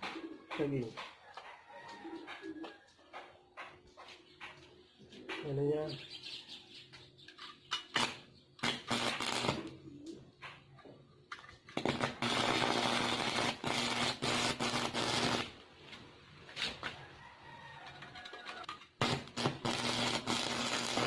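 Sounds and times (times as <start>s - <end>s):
welding arc crackling and buzzing: 8.0s - 9.7s, 11.8s - 15.6s, 19.0s - 21.0s.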